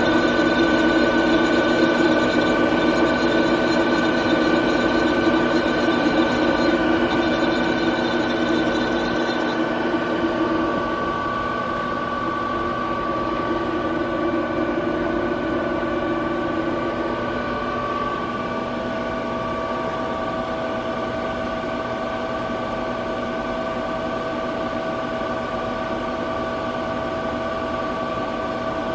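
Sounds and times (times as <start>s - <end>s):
machine whining tones: 0.0s - 14.4s
lathe machine hum: 0.0s - 23.5s.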